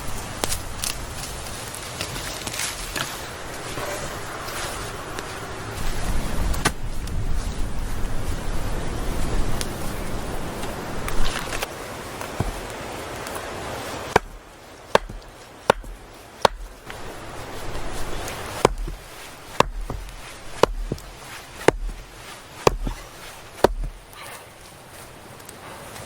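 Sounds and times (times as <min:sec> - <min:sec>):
rustling: 0:09.6 - 0:26.0
chopping blows: 0:12.2 - 0:17.0, 0:17.7 - 0:24.2.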